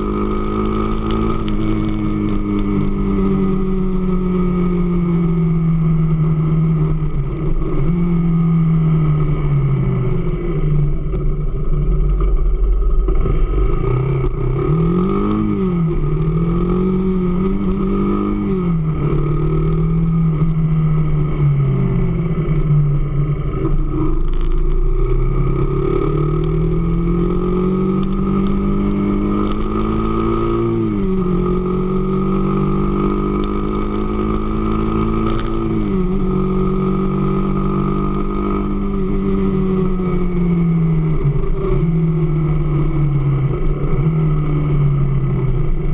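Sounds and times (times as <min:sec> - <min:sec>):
motorcycle engine revving: 0:00.0 - 0:45.9.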